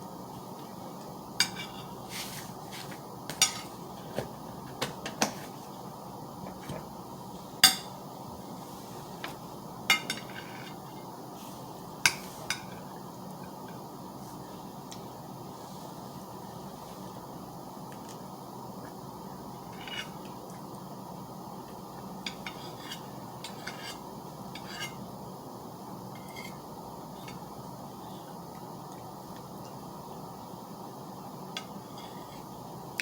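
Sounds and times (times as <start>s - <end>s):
cutlery clinking on dishes: 3.3s - 3.7s.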